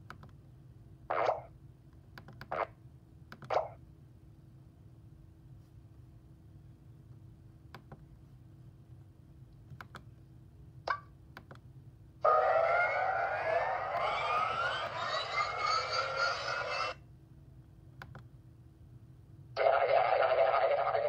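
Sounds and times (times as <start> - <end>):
rising tones effect: 12.3 - 17.0.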